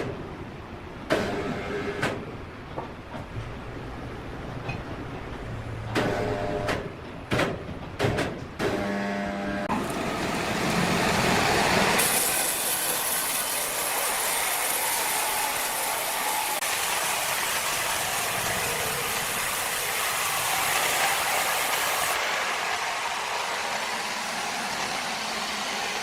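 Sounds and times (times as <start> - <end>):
sawmill machinery clattering: 9.7 - 26.0.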